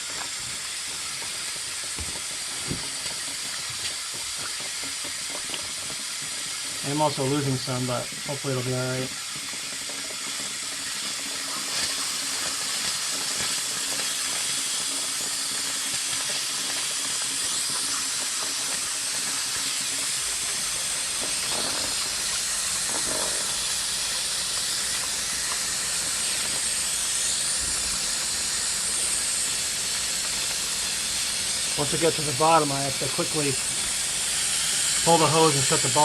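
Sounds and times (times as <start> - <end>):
compressed air hissing: 11.5 - 36.0.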